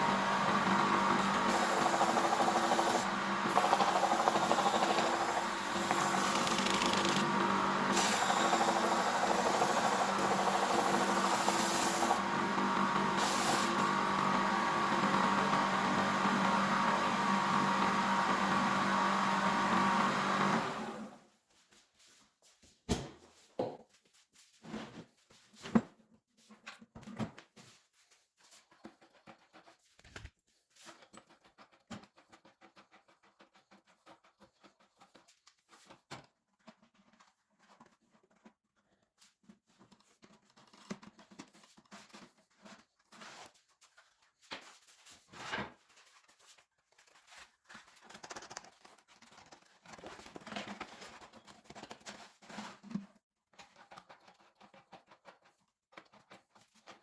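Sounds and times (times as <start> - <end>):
abrasive belt rubbing workpiece: 0.0 - 16.0
belt grinder motor humming: 0.0 - 21.1.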